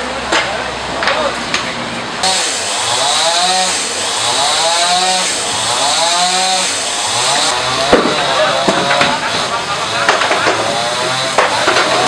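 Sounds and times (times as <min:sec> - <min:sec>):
steady hiss: 0:02.2 - 0:08.4
small engine revving: 0:02.2 - 0:12.0.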